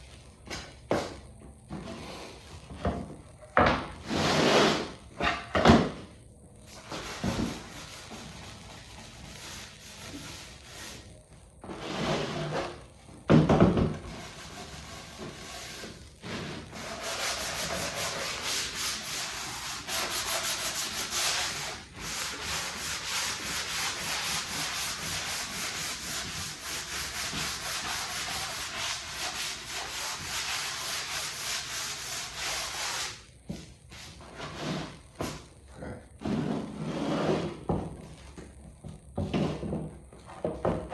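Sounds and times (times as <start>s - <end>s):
sanding block on wood: 14.1s - 33.2s.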